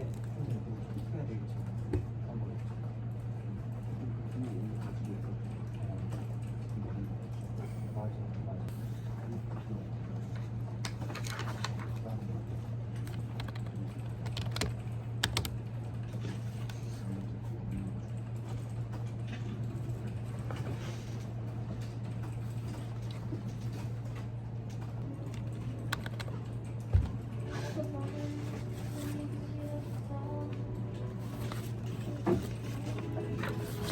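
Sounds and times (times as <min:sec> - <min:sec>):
steady low hum: 0:00.0 - 0:33.9
computer keyboard typing: 0:13.0 - 0:15.6, 0:25.1 - 0:27.1.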